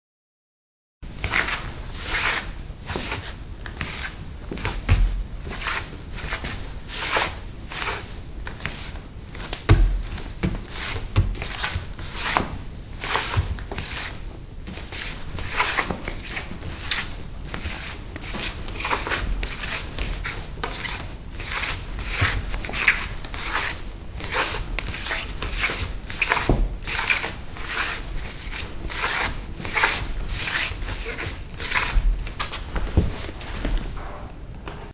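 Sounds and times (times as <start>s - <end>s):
bare feet scuffing on wooden floor: 1.3s - 34.2s
heavy footfall thud: 9.7s - 10.1s, 26.5s - 26.9s.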